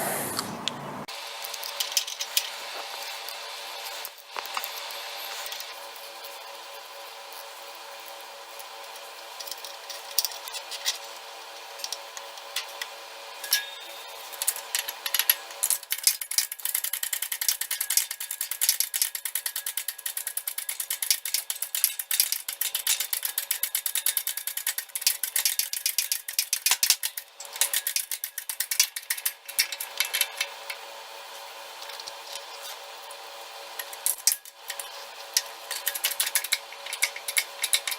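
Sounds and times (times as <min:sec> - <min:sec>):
metallic clicks and ticks: 0:14.4 - 0:30.8, 0:33.8 - 0:37.9.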